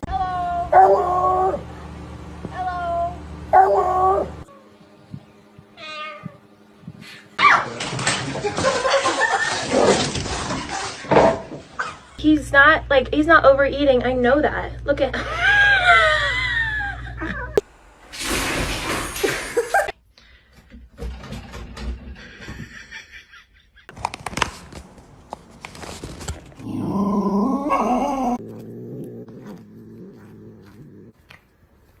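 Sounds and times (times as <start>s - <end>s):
dog vocalizing: 27.6s - 31.4s.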